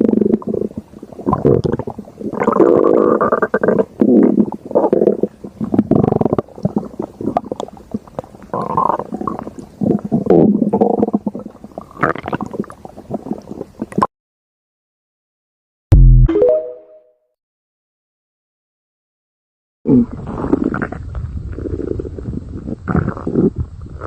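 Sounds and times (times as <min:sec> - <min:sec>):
stomach growling: 0:00.0 - 0:14.1, 0:19.9 - 0:24.0.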